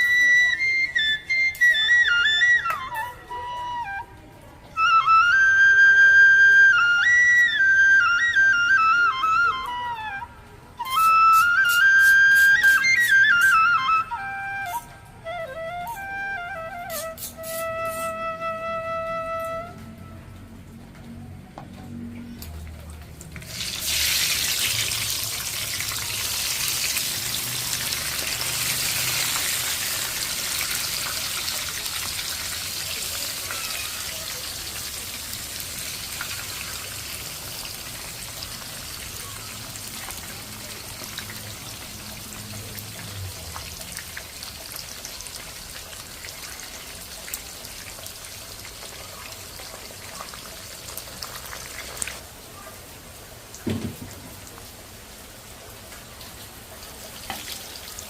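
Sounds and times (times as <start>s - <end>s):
food sizzling in a pan: 23.4s - 52.4s.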